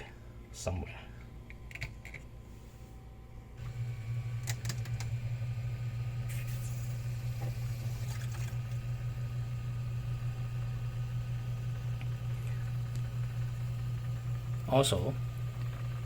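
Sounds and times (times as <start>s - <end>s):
pump humming: 3.6s - 16.0s.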